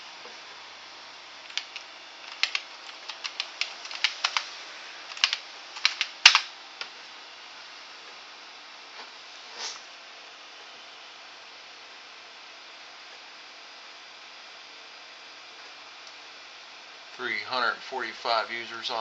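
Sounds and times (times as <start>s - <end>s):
keyboard key clicks: 1.5s - 4.5s.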